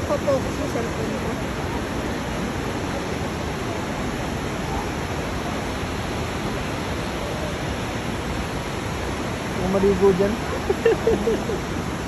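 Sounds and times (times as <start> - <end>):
waterfall roaring: 0.0 - 12.0.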